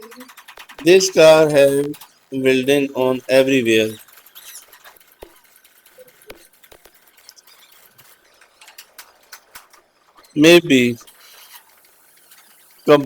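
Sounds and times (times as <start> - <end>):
small clicks and ticks: 0.0 - 1.0, 1.6 - 2.4, 3.9 - 10.4, 11.0 - 12.9
low hiss: 0.9 - 3.9, 10.4 - 11.0.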